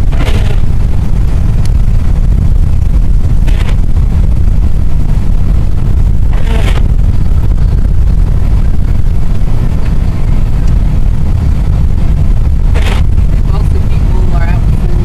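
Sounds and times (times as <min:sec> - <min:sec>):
car cabin rumble: 0:00.0 - 0:15.0.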